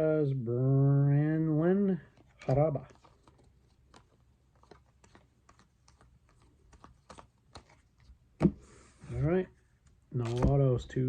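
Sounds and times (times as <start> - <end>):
trading cards clicking and sliding: 2.1 - 8.8.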